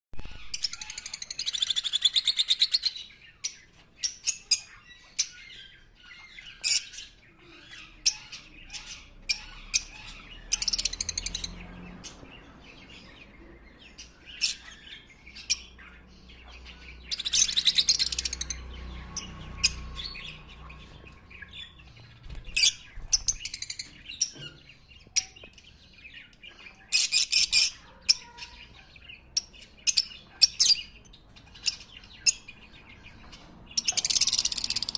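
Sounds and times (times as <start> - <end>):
shrill bird chattering: 0.2 - 3.1, 4.1 - 11.6, 14.0 - 18.6, 26.5 - 32.5, 33.8 - 34.9
lovebirds chirping: 0.2 - 34.9.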